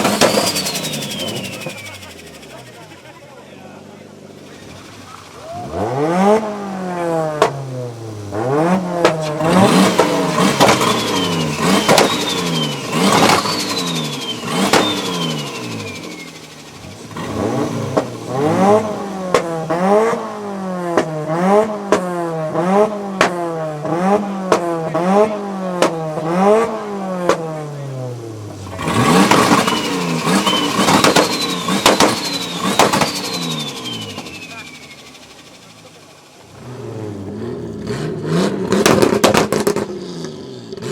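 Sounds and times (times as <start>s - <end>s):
turbo whistle falling in pitch: 0.0s - 2.6s, 10.8s - 16.4s, 29.4s - 35.1s
car engine revving: 0.0s - 40.9s
sharp exhaust cracks: 0.0s - 40.9s.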